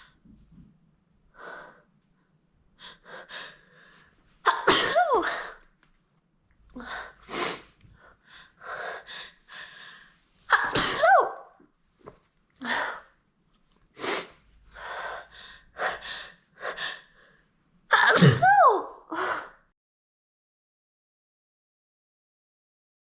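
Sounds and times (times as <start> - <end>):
woman sneezing loudly: 4.5 - 5.6, 10.5 - 11.5, 17.9 - 19.0.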